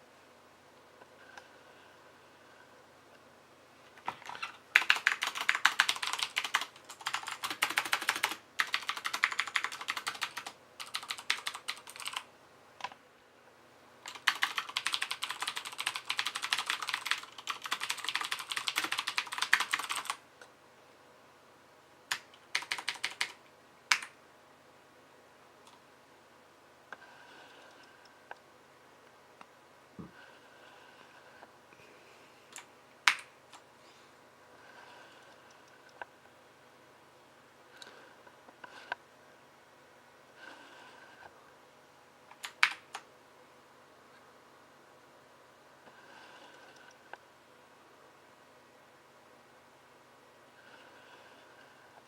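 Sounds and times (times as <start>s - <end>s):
mechanical keyboard typing: 4.1s - 12.3s, 14.0s - 20.2s, 22.1s - 24.2s, 42.4s - 43.0s.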